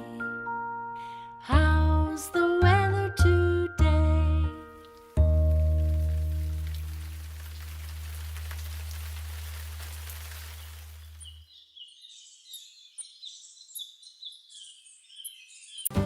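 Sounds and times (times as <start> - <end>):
rain falling: 4.8 - 11.4
small birds chirping: 5.6 - 15.9.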